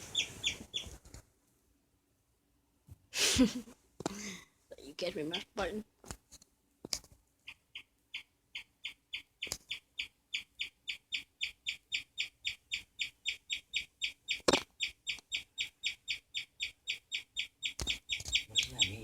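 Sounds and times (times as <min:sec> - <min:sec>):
guinea pigs wheeking: 0:07.5 - 0:19.0.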